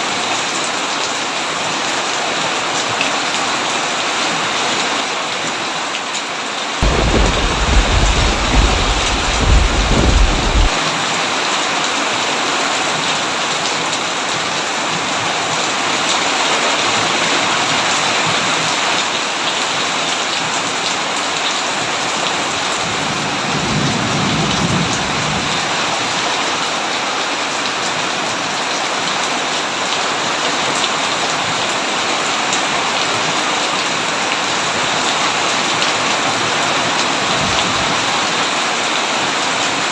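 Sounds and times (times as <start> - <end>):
heavy rain falling: 0.0 - 39.9
thunder rumbling: 6.8 - 10.8.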